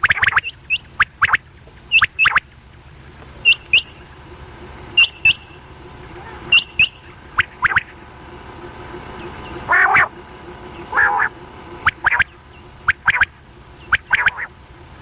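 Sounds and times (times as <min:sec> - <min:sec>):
quail calling: 0:00.0 - 0:02.5, 0:03.4 - 0:04.2, 0:04.9 - 0:08.0, 0:09.0 - 0:14.6.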